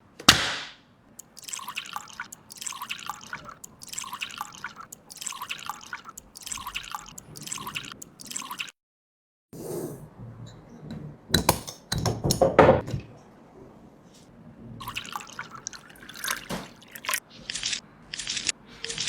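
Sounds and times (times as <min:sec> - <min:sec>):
wet squishing food: 0:01.2 - 0:08.7.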